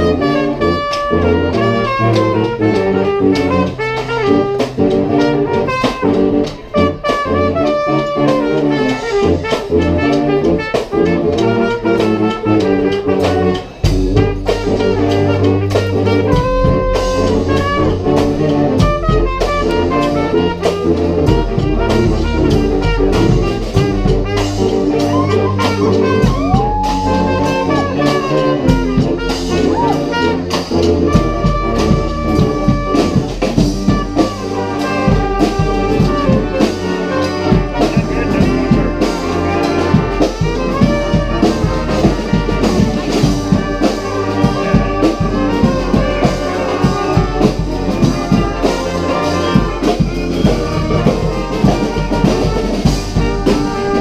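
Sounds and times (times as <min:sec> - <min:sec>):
marching brass band playing: 0:00.0 - 0:54.0
horn sliding into held note: 0:14.8 - 0:20.4.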